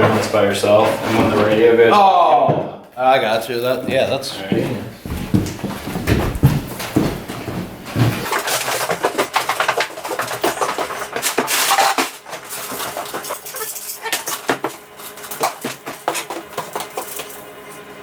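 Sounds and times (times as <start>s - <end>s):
small hard objects clinking: 8.2s - 17.7s.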